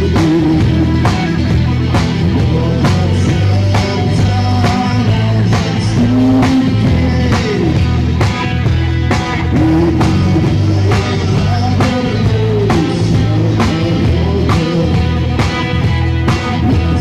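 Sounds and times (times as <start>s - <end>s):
rock band playing: 0.0s - 17.0s.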